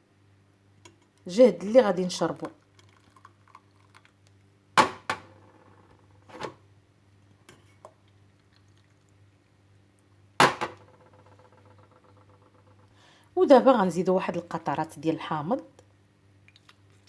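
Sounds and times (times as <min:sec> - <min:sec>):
kitchenware knocking and clinking: 0:10.4 - 0:11.0.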